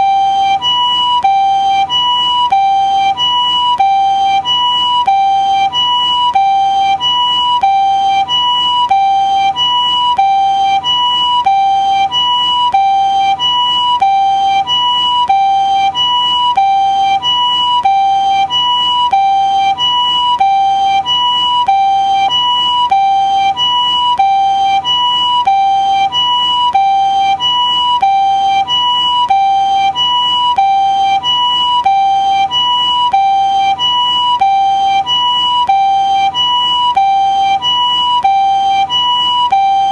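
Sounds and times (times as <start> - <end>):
two-tone ambulance siren: 0.0 - 39.9.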